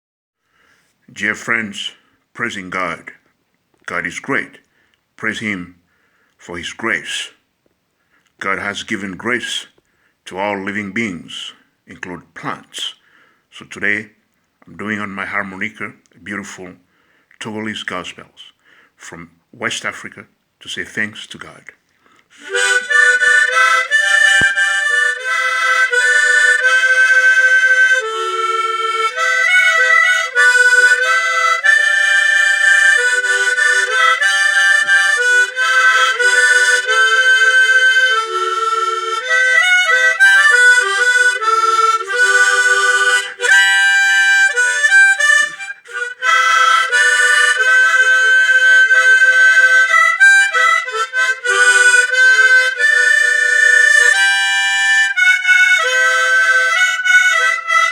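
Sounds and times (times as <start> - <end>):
harmonica melody: 22.3 - 57.9.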